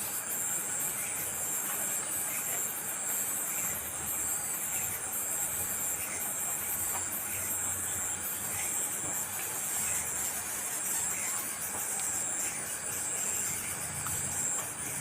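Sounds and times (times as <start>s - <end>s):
high-pitched insect chirring: 0.0s - 15.0s.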